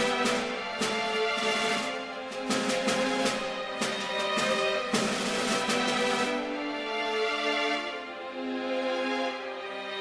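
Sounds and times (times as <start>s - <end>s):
sharp percussive beats: 0.0s - 6.6s
sustained music notes: 0.0s - 10.0s.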